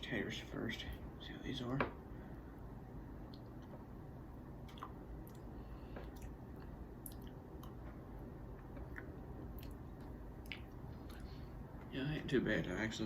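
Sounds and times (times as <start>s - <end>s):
low steady hum: 0.0s - 13.0s
person chewing: 4.6s - 11.4s.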